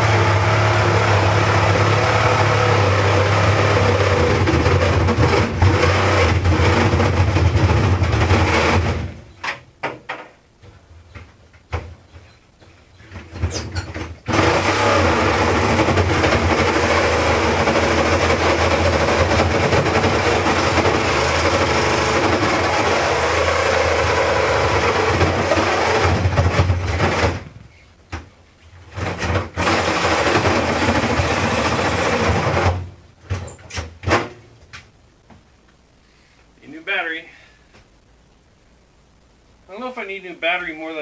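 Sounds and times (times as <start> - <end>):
reciprocating saw cutting metal: 14.3 - 26.2.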